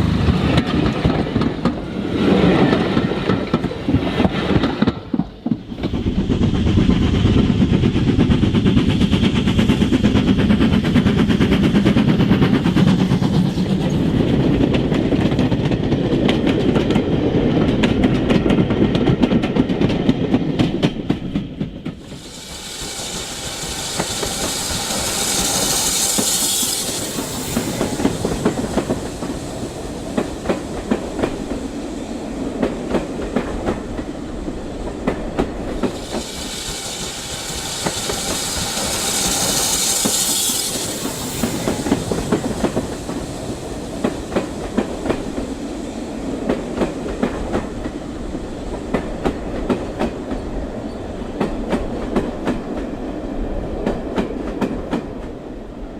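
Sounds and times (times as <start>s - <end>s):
model train wheels rumbling: 0.0s - 52.9s
steam hissing: 5.7s - 15.3s, 21.8s - 51.0s.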